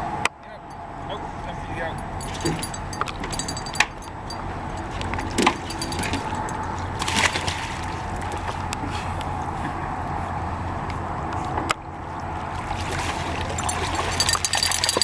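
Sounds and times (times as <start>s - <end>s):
knocks and scuffs against boat: 4.8s - 11.7s.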